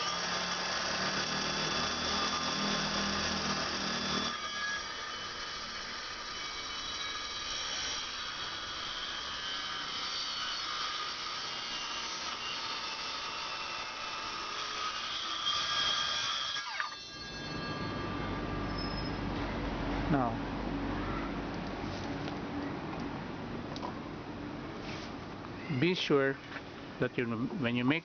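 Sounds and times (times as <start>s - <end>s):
circular saw cutting wood: 0.0s - 19.2s
saw blade spinning down: 0.0s - 19.2s.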